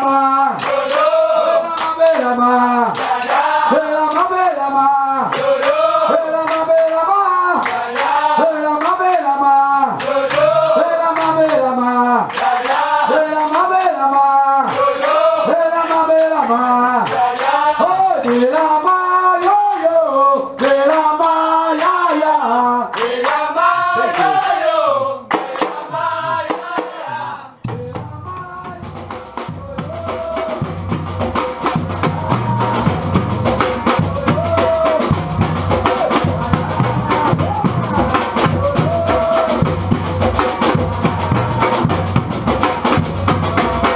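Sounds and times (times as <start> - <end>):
percussion ensemble with bass drums: 0.0 - 43.9
hand clapping: 0.5 - 4.6, 5.2 - 24.6, 25.3 - 27.0
person singing: 33.7 - 42.0, 43.0 - 43.9.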